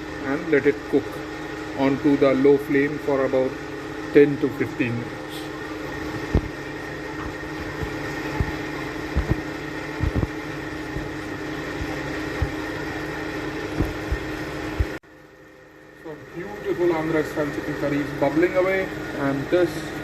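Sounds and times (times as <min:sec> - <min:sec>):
fan-like hum: 0:00.0 - 0:20.0.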